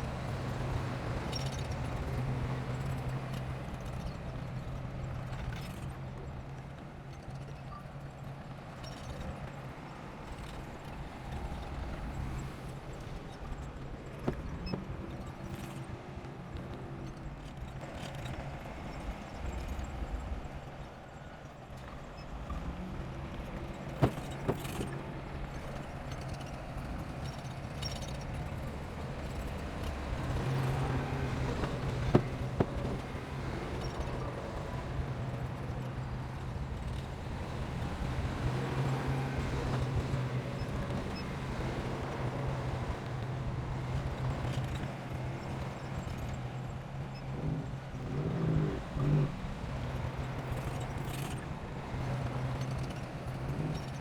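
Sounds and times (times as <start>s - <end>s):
heavy machinery diesel engine: 0.0s - 5.5s, 22.6s - 54.0s.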